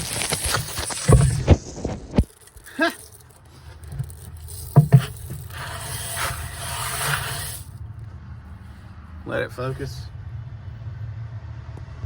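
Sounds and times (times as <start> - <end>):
scraping rustle inside barrel: 0.0 - 7.8.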